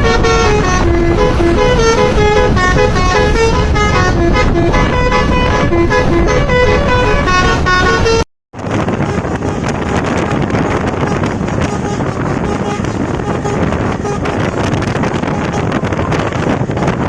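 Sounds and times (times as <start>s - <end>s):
low rumble: 0.0s - 17.0s
multi-tone bus horn melody: 0.0s - 17.0s
wind on microphone: 0.0s - 17.0s.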